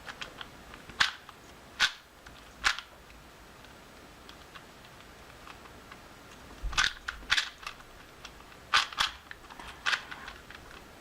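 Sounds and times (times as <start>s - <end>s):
plastic puzzle cube clacking: 0.0s - 2.9s, 3.6s - 11.0s.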